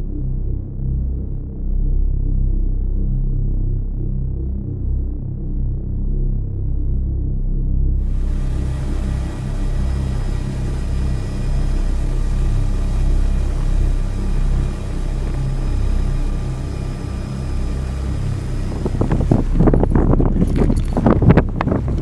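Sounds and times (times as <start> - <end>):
low engine rumble: 7.8 - 22.0
rough gusts of noise: 8.0 - 22.0.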